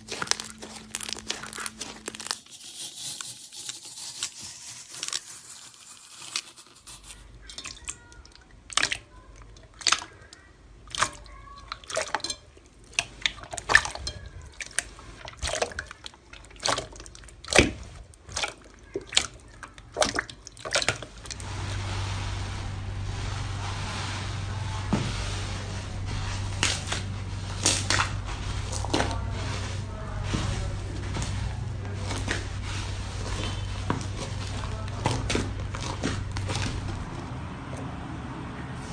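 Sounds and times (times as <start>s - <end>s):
low hum: 21.3s - 38.9s.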